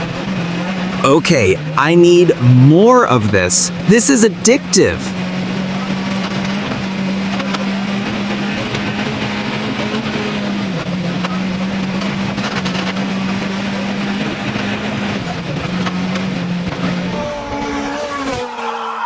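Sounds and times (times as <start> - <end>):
rally car engine at high revs: 5.5 - 15.1.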